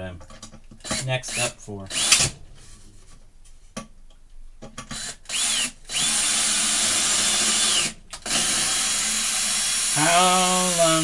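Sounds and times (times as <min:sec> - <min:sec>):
power drill driving screws: 0:00.8 - 0:02.4, 0:04.9 - 0:11.0.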